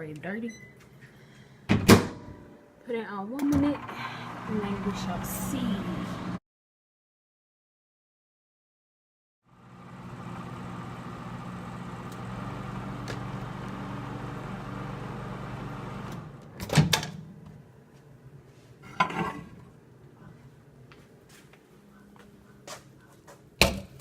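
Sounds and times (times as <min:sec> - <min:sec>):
microwave oven humming: 0:03.5 - 0:06.4, 0:09.5 - 0:16.6.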